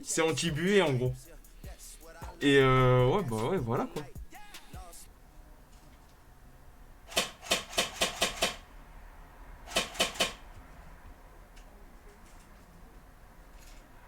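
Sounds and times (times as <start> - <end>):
airsoft rifle shots clicking: 7.1 - 8.7, 9.7 - 10.6.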